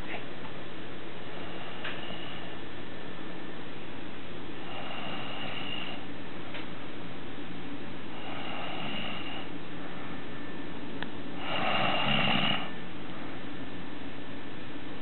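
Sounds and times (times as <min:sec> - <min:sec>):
person snoring: 0:04.6 - 0:06.0, 0:08.1 - 0:09.5, 0:11.4 - 0:12.8.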